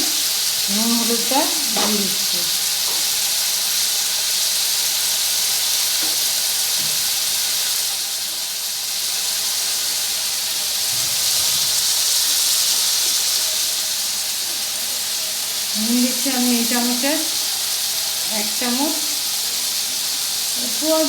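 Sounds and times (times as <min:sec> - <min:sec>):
vegetables sizzling in oil: 0:00.0 - 0:21.0.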